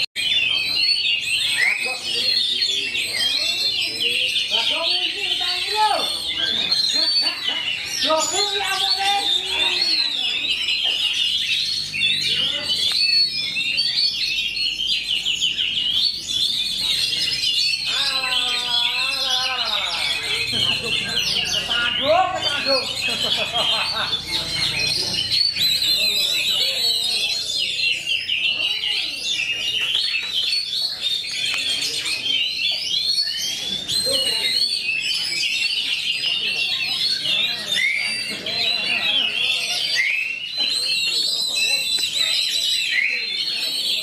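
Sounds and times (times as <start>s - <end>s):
birds chirping and trilling: 0.0s - 44.0s.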